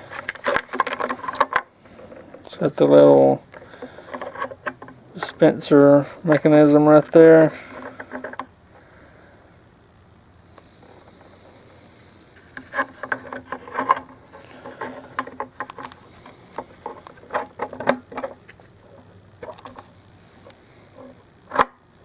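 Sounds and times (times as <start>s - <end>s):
plastic tank clicks and rattles: 0.1s - 5.5s, 6.3s - 8.5s, 12.5s - 18.7s.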